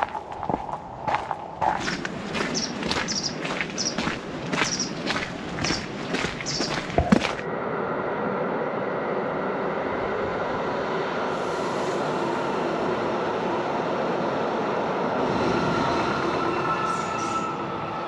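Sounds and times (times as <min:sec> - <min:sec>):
train wheels rumbling on rails: 0:00.0 - 0:07.5.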